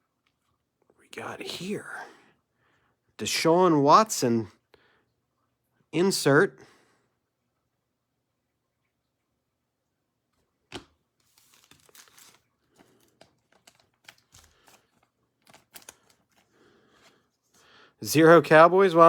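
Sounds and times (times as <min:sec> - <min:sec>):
small crackles: 0:11.1 - 0:17.8
trading cards and wrapper rustling: 0:11.2 - 0:17.6.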